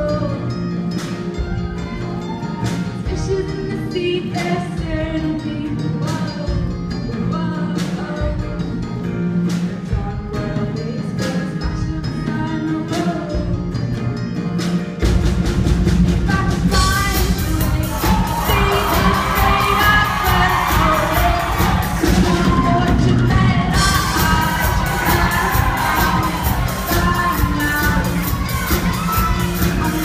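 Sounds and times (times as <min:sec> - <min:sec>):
person singing: 0:00.0 - 0:14.0, 0:16.2 - 0:30.0
guitar strumming: 0:00.0 - 0:30.0
live band playing pop-rock: 0:00.0 - 0:30.0
audience cheering: 0:17.6 - 0:30.0.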